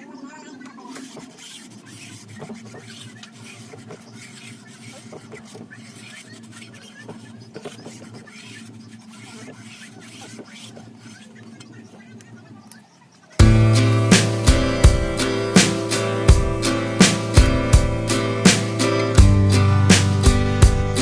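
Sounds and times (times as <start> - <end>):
small scrapes and clicks of hand work: 0.6 - 12.8.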